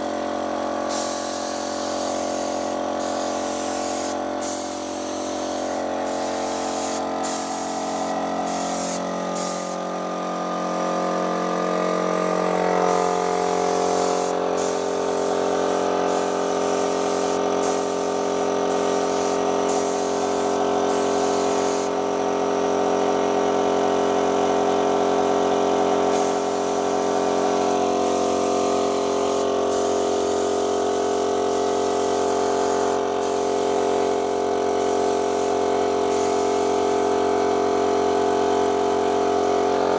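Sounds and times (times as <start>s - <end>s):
electric paint sprayer hissing: 0.8s - 22.4s, 24.7s - 39.9s.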